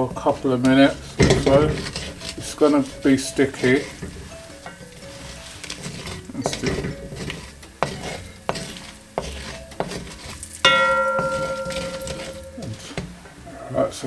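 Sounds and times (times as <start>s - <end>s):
metallic clang: 0.0s - 8.7s, 9.7s - 13.4s
spoon scraping a pan: 0.0s - 13.4s
faint sizzle: 0.0s - 14.0s.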